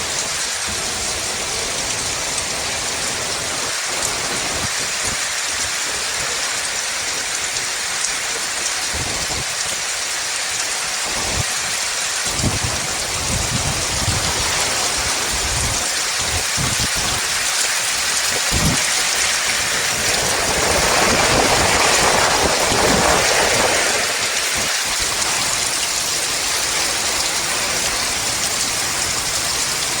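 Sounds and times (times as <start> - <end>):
heavy rain pouring: 0.0 - 30.0
wind gusts buffeting microphone: 12.3 - 30.0.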